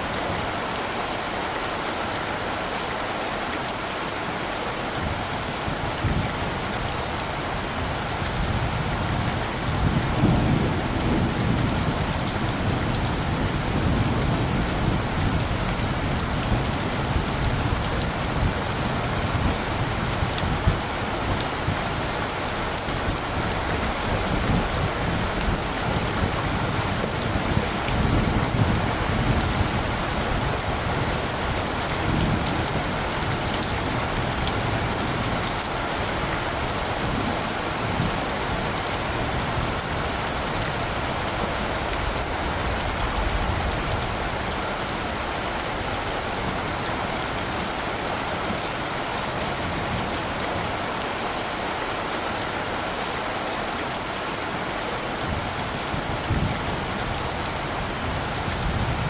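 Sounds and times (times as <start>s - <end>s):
steady rain falling: 0.0s - 59.0s
low thunder rumbles: 5.0s - 47.4s.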